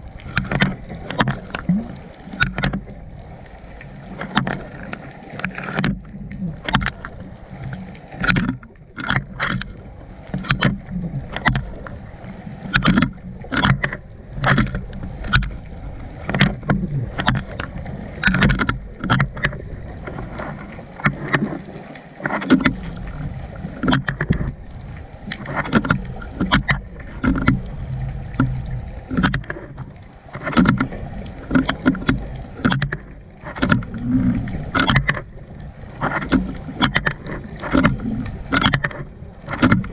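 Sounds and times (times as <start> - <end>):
low rumble of water: 0.0 - 39.9
sharp knocks and clicks: 8.2 - 11.8, 12.7 - 15.6, 16.2 - 21.6, 25.3 - 27.7, 28.3 - 35.3, 36.0 - 39.9.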